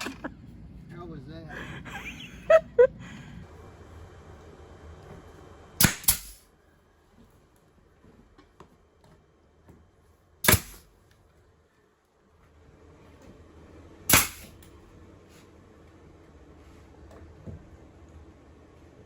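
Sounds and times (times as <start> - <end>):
sharp bangs: 5.8 - 6.4, 10.4 - 10.8, 14.1 - 14.6.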